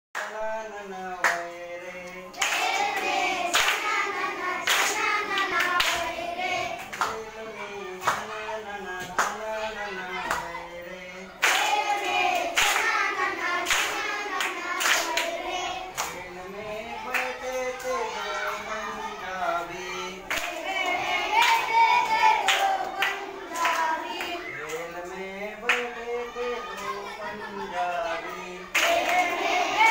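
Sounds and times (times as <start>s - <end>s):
hands clapping on the beat: 1.2s - 6.2s, 6.8s - 7.2s, 8.0s - 9.5s, 10.2s - 10.5s, 11.4s - 16.2s, 17.1s - 18.6s, 20.3s - 24.9s, 25.6s - 25.9s, 28.7s - 29.9s
children singing in chorus: 1.6s - 29.9s.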